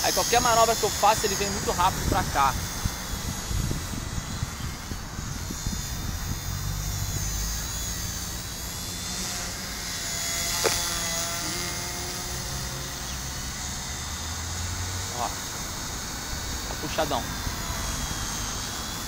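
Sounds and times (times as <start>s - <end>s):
rc helicopter motor whine: 0.0s - 19.0s
wind rumble on microphone: 1.4s - 8.0s.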